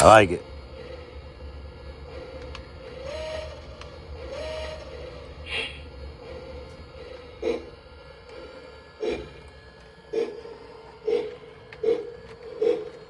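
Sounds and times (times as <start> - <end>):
model train electric hum: 1.2 - 10.0.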